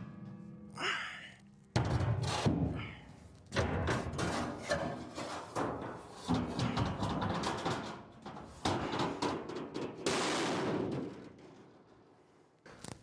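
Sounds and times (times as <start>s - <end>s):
metallic knocks and clatters: 1.8s - 2.9s, 3.5s - 12.4s.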